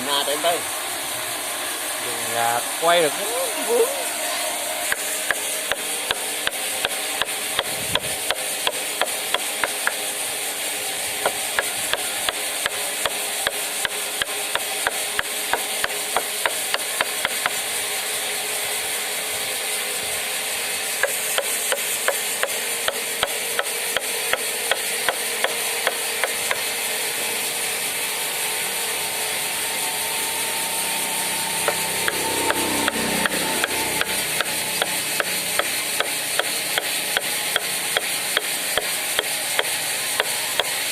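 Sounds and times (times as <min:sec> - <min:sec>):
constant hiss: 0:00.0 - 0:06.2
mallet striking chisel: 0:04.9 - 0:10.0, 0:11.2 - 0:17.6, 0:21.0 - 0:26.6, 0:31.6 - 0:40.8.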